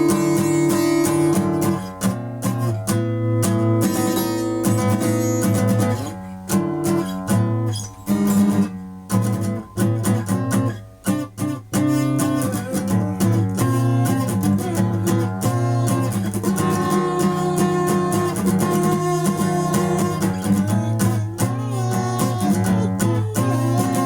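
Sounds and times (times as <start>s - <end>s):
strummed guitar chords: 0.0s - 24.0s.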